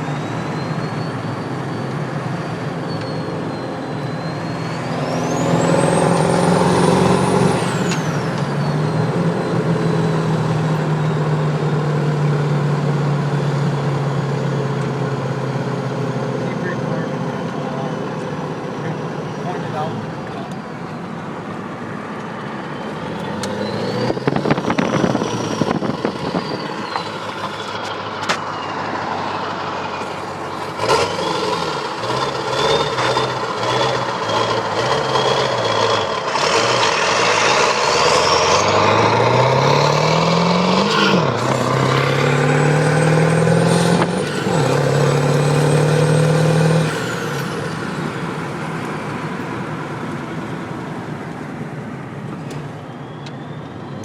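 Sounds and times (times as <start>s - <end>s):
diesel truck engine pulling hard: 0.0s - 54.0s.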